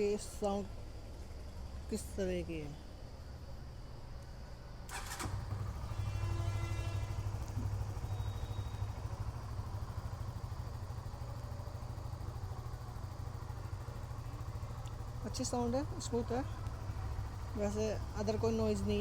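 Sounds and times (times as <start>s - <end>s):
motorcycle engine idling: 0.0s - 19.0s.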